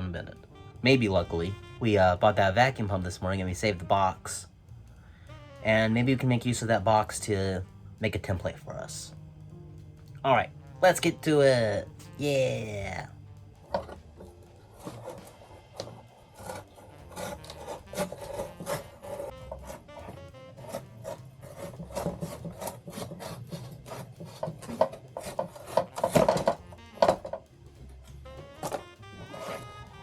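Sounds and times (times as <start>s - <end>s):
background music: 0.0s - 30.0s
cardboard cutting rasps: 13.6s - 27.5s, 28.4s - 30.0s.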